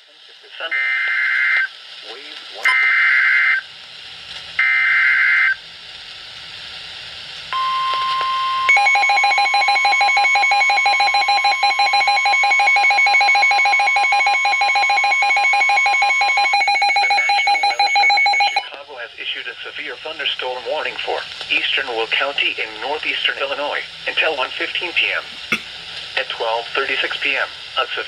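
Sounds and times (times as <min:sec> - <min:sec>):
hiss: 0:00.0 - 0:07.6, 0:19.1 - 0:28.0
steady warning alarm tone: 0:07.6 - 0:18.7
rapidly pulsing electronic beep: 0:08.7 - 0:18.6.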